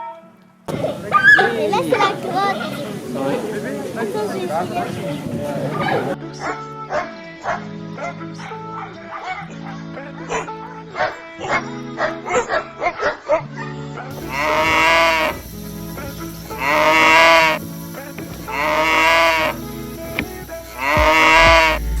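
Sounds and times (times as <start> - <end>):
cattle mooing: 14.2 - 15.5, 16.5 - 17.6, 18.5 - 19.6, 20.8 - 22.0.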